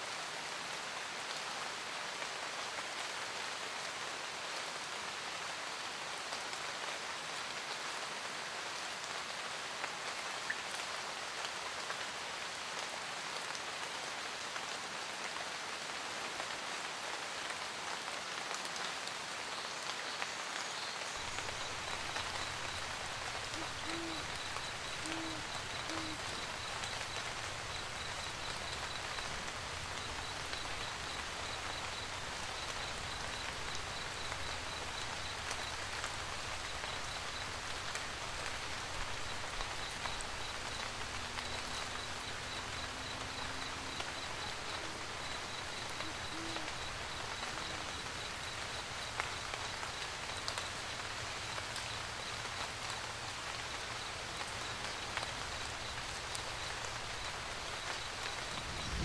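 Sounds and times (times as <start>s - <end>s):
rain pattering on a roof: 0.0s - 59.0s
owl hooting: 21.2s - 35.5s, 40.0s - 48.8s
faint high pulsed chirping: 21.2s - 52.4s, 53.8s - 59.0s.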